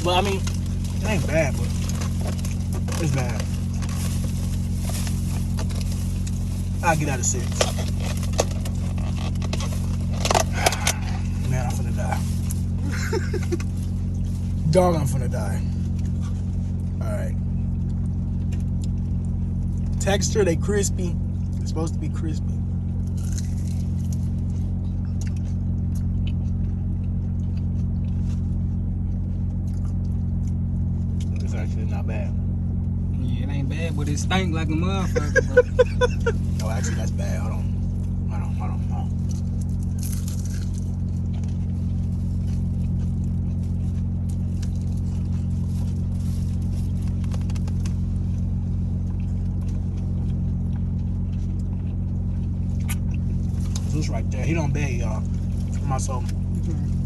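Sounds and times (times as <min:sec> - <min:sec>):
fries being chewed: 0:00.0 - 0:14.6, 0:15.8 - 0:20.1, 0:22.6 - 0:31.5, 0:35.1 - 0:54.4, 0:55.2 - 0:57.0
car idling: 0:00.0 - 0:57.0
low hum: 0:00.0 - 0:57.0.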